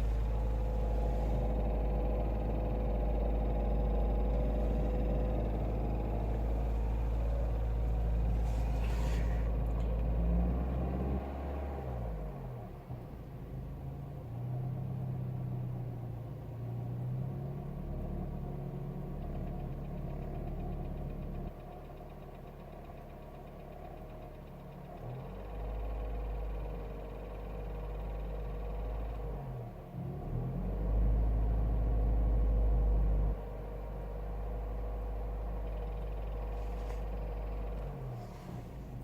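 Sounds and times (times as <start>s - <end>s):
car engine running: 0.0s - 13.5s, 33.6s - 39.0s
engine knocking and rattling: 0.0s - 39.0s.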